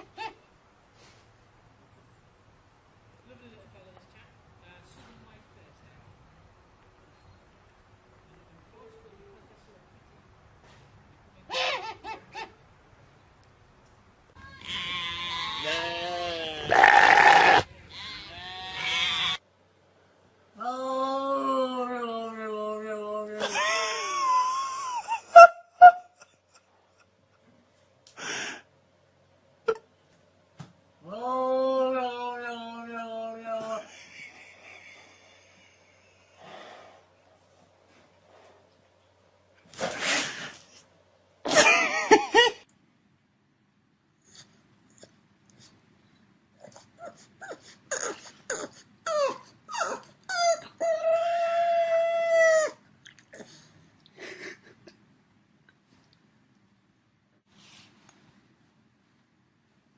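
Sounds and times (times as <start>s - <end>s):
dog whining and howling: 46.6s - 52.8s.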